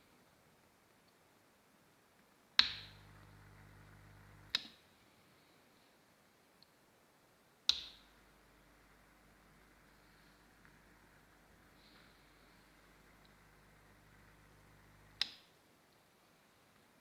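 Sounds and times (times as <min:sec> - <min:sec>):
low mains hum: 0:00.0 - 0:17.0
subwoofer switch click: 0:07.7 - 0:08.2.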